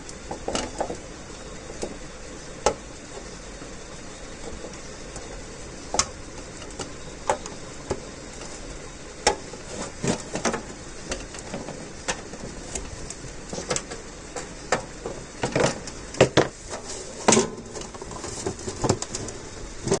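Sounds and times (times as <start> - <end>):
steady background hiss: 0.0 - 20.0
clicks knocks and scrapes of parts: 9.2 - 19.4.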